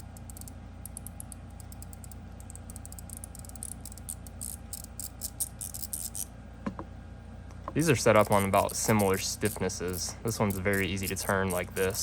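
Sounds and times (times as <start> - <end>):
slider fidget clicking: 0.0 - 6.3.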